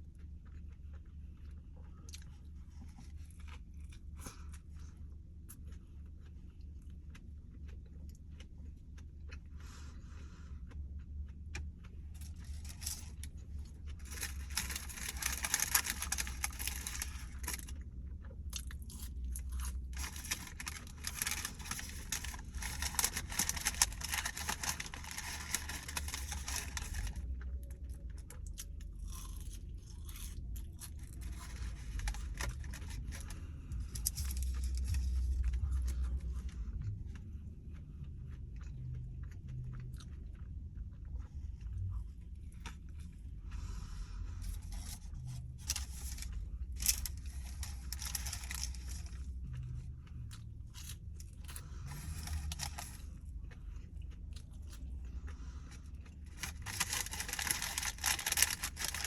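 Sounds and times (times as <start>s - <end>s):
chewing and crunching food: 0.0s - 59.0s
low hum: 0.0s - 59.0s.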